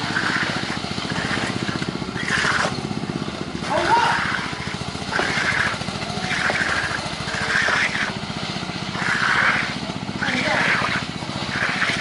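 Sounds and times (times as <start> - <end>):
small engine running: 0.0 - 12.0.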